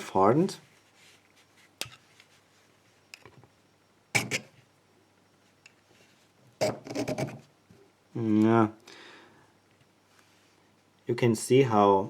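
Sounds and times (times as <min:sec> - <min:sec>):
metal file scraping steel: 0:04.2 - 0:04.5.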